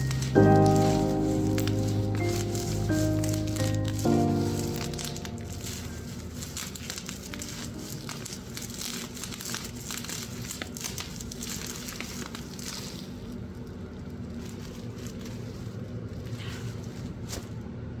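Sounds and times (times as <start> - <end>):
background music: 0.0 - 8.9
crinkling and rustling: 0.0 - 17.8.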